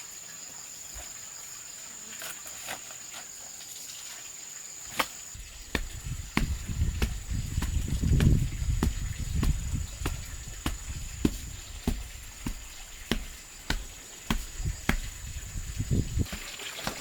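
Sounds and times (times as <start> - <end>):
hand tool knocking on wood: 5.6 - 17.0.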